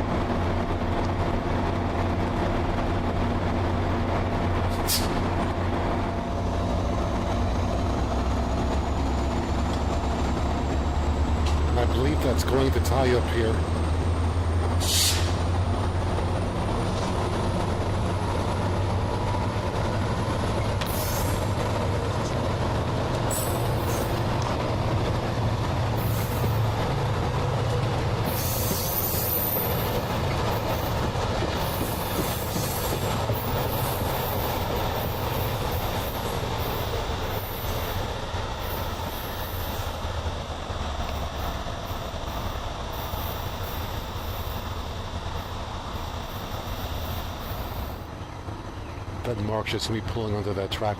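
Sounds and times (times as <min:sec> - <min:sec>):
locomotive low rumble: 0:00.0 - 0:50.9
train brakes squealing: 0:04.7 - 0:05.2, 0:14.8 - 0:15.5, 0:20.6 - 0:21.6, 0:23.3 - 0:24.3, 0:28.2 - 0:31.0, 0:31.6 - 0:40.0.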